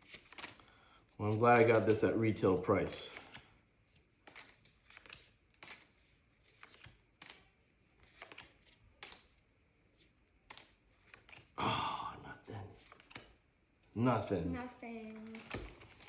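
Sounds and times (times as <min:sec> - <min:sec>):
trading cards flipped by hand: 0:00.0 - 0:00.7, 0:01.3 - 0:02.1, 0:03.0 - 0:11.6, 0:12.8 - 0:13.4, 0:15.0 - 0:16.0.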